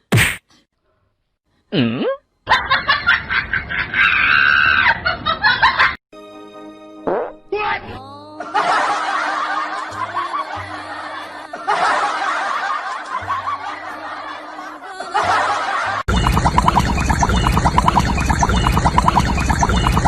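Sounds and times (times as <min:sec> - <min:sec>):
people laughing: 0:02.5 - 0:06.0, 0:08.4 - 0:16.1
background music: 0:06.2 - 0:20.0.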